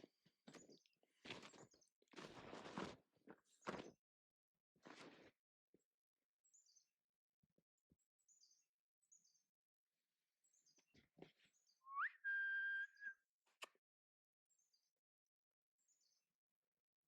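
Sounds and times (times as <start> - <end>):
light crunches: 0.5 - 3.9
small birds chirping: 6.4 - 7.0, 8.0 - 9.5, 10.4 - 13.7
whistled note sliding up: 11.9 - 13.1.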